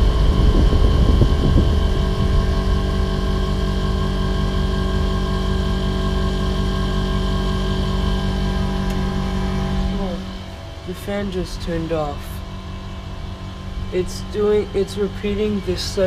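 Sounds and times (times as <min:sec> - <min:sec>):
air conditioner compressor humming: 0:00.0 - 0:16.0
condenser fan running: 0:00.0 - 0:16.0
low rumble: 0:00.0 - 0:16.0.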